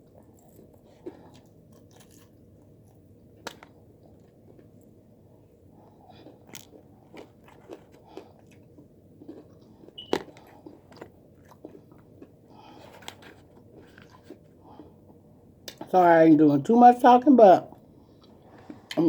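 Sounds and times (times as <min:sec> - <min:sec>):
chewing food crunches: 0:00.0 - 0:05.0, 0:05.7 - 0:15.0.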